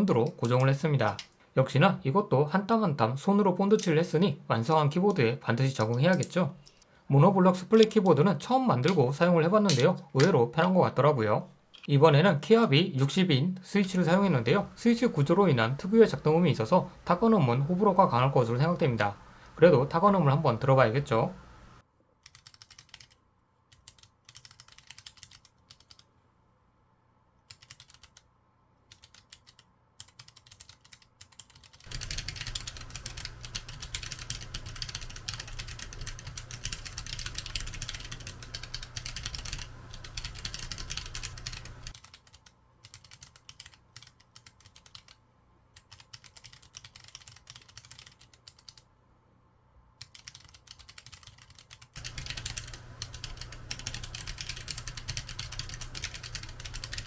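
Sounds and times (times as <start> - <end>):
typing on keyboard: 22.3 - 26.1, 27.5 - 28.3, 28.9 - 45.2, 45.8 - 48.8, 50.0 - 57.0.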